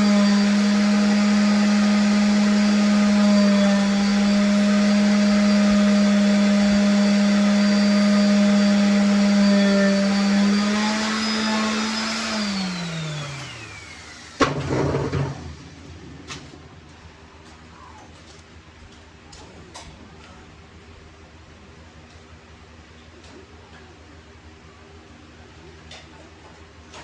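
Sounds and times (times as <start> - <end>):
electric motor running: 0.0 - 14.4.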